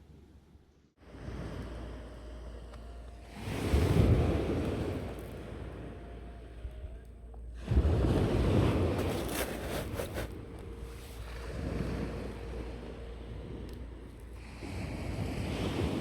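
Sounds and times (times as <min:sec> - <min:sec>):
wind: 0:00.0 - 0:16.0
sea waves breaking on shore: 0:07.6 - 0:13.7, 0:14.4 - 0:16.0.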